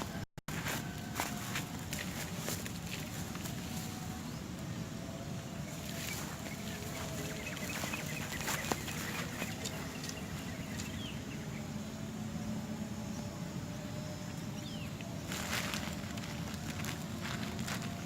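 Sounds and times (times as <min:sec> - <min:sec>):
bird chirps: 0:05.6 - 0:11.8.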